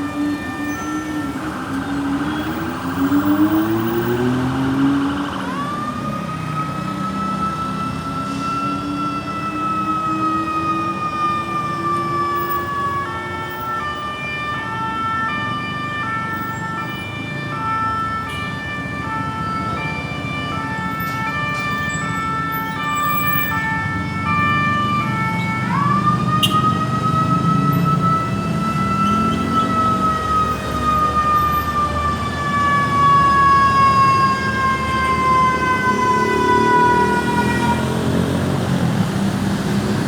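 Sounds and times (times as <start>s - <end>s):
vehicle engine: 0.0s - 8.6s, 19.0s - 40.0s
ambulance siren: 0.0s - 40.0s
traffic noise: 0.0s - 40.0s.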